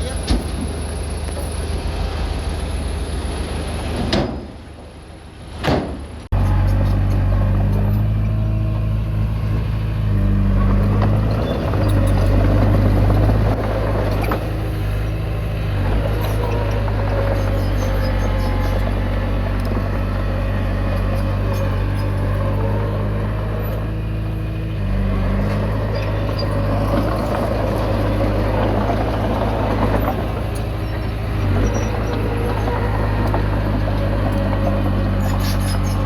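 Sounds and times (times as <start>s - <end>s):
diesel engine running under load: 0.0s - 5.6s, 6.3s - 36.0s
blade scraping soil: 9.2s - 36.0s
tracks clattering: 25.4s - 36.0s.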